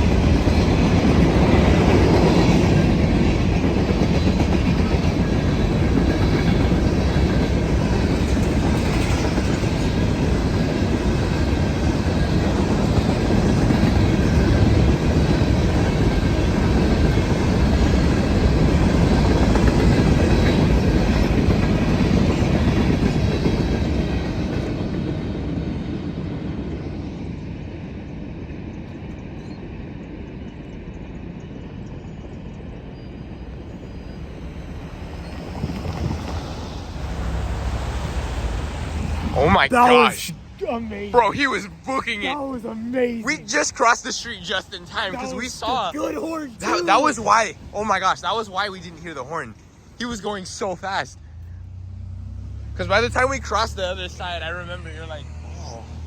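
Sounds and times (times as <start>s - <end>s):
train wheels clattering over rails: 0.0s - 26.6s.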